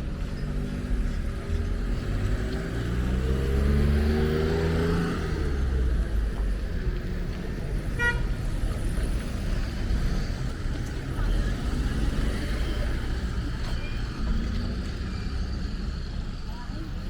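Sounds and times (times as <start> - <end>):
street traffic rumble: 0.0 - 17.0
car horn toot: 7.9 - 8.4.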